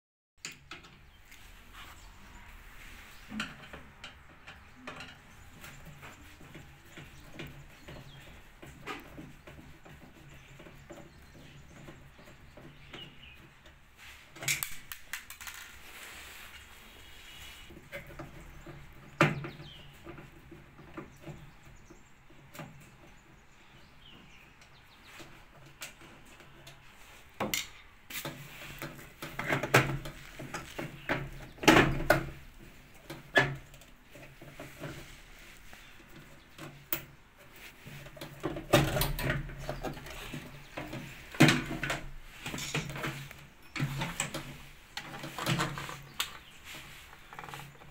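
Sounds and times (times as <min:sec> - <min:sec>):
tools clicking and knocking: 0:03.3 - 0:13.8, 0:14.4 - 0:15.8, 0:27.4 - 0:35.0, 0:38.1 - 0:46.5.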